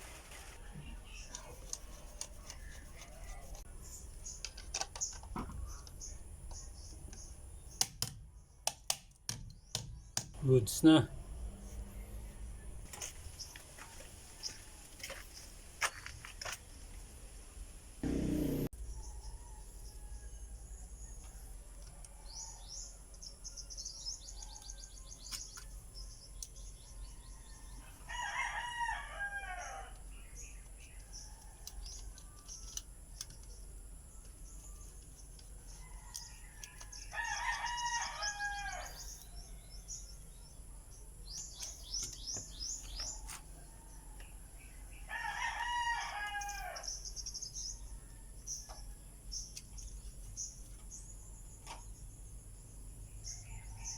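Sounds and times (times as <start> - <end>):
rooster crowing: 28.0 - 30.0, 35.8 - 39.0, 45.1 - 46.9.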